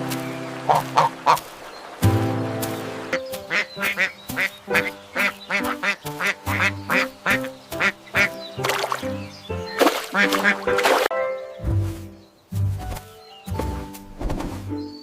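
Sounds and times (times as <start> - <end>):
background music: 0.0 - 15.0
duck quacking: 0.7 - 1.4, 3.5 - 8.4, 9.8 - 10.9.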